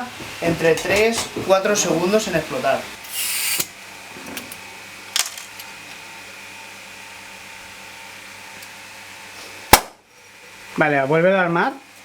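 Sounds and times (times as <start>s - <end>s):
steady gas hiss: 0.0s - 3.7s.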